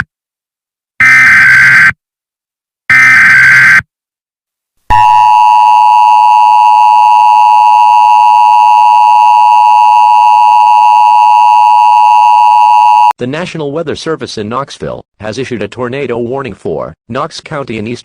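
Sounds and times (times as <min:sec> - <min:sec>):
screeching data burst: 0:02.9 - 0:03.8.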